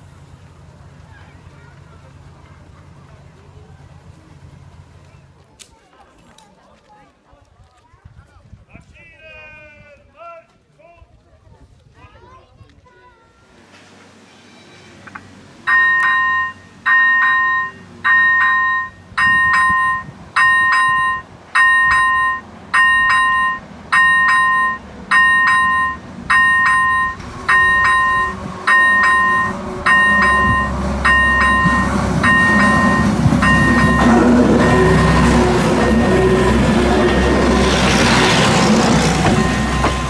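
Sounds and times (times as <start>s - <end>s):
low rumble of railbus: 0.0s - 6.6s, 11.6s - 40.0s
two-tone warning signal ding: 15.7s - 37.9s, 39.2s - 40.0s.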